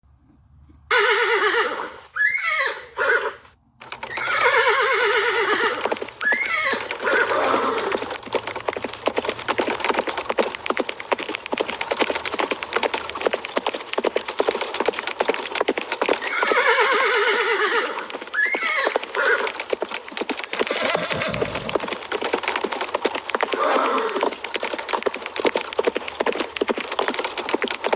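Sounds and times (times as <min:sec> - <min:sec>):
horses whinnying: 0:00.9 - 0:09.6, 0:16.0 - 0:25.0.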